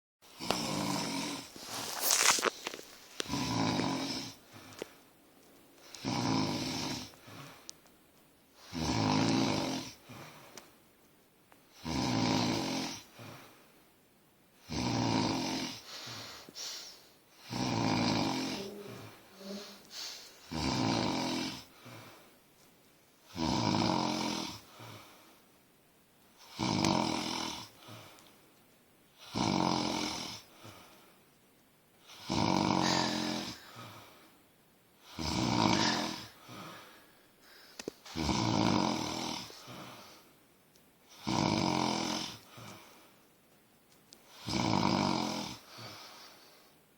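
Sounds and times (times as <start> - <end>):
person snoring: 0.3 - 4.4, 5.9 - 7.2, 8.6 - 10.0, 11.8 - 13.1, 14.7 - 16.2, 17.4 - 22.0, 23.3 - 25.0, 26.4 - 28.0, 29.2 - 30.5, 32.1 - 34.0, 35.1 - 37.0, 38.1 - 40.2, 41.2 - 42.7, 44.3 - 46.0
faint breathing: 0.5 - 5.0, 7.0 - 7.8, 10.0 - 10.7, 15.8 - 17.6, 18.2 - 20.5, 21.6 - 22.4, 32.8 - 34.4, 35.6 - 38.2, 39.1 - 40.4, 42.4 - 43.2, 45.6 - 46.8.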